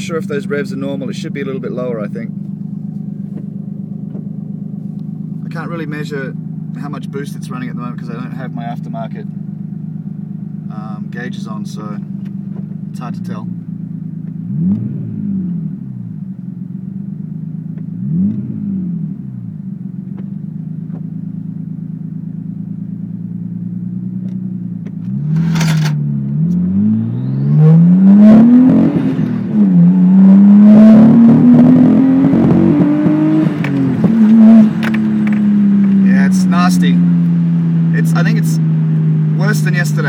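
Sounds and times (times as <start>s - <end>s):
car engine idling and revving: 0.0s - 40.0s
engine crackling misfire: 25.0s - 26.0s, 33.6s - 37.0s.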